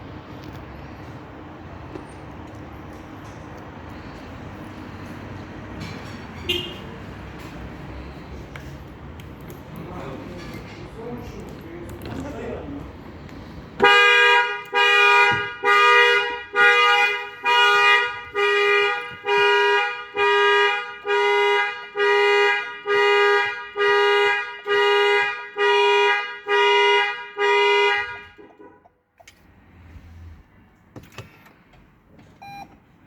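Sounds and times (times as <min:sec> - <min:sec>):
two-tone car horn honking: 0:06.4 - 0:07.0, 0:13.8 - 0:29.0.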